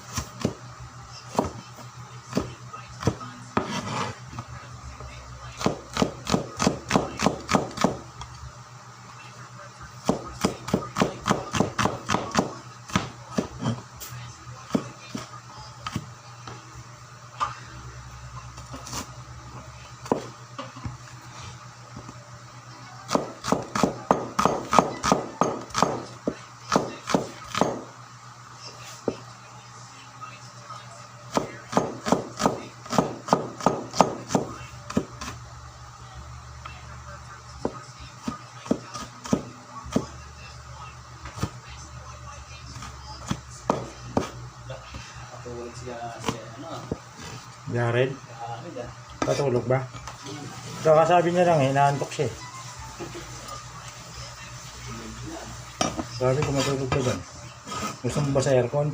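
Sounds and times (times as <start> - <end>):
steady low hum: 0.0 - 58.9
knife chopping on cutting board: 0.1 - 0.6, 1.3 - 1.6, 2.3 - 4.1, 5.6 - 8.0, 10.0 - 13.8, 20.0 - 21.0, 23.1 - 27.9, 31.3 - 35.4, 37.6 - 40.1, 42.8 - 44.4.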